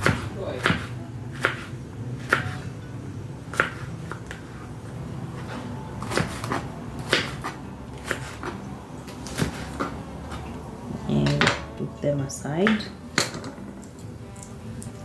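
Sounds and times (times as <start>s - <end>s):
knife cutting on a cutting board: 0.0s - 2.7s, 5.4s - 10.4s.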